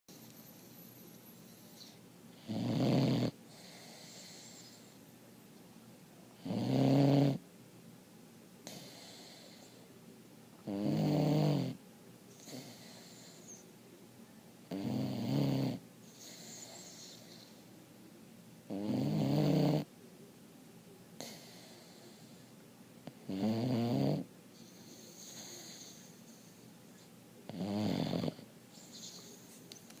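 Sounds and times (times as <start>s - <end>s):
quiet breathing: 0.1s - 2.5s, 3.3s - 5.2s, 8.6s - 10.7s, 12.3s - 14.8s, 15.8s - 18.8s, 20.9s - 23.3s, 24.2s - 30.0s
loud low snoring: 2.4s - 4.6s, 6.4s - 7.4s, 10.6s - 11.8s, 14.7s - 16.4s, 18.7s - 19.9s, 23.3s - 24.3s, 27.5s - 28.4s.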